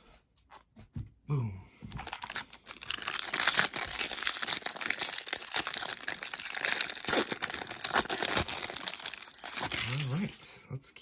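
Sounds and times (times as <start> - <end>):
wrapper crinkling: 1.9 - 10.4.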